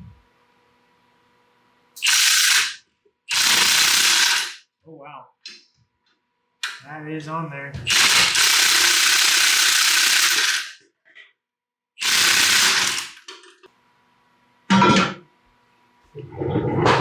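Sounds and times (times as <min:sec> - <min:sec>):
impact wrench hammering on bolt: 0:07.8 - 0:09.1.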